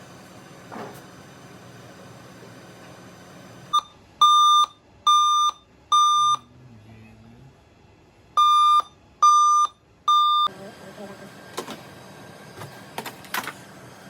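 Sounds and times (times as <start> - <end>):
electronic beeper beeping: 8.4 - 10.5.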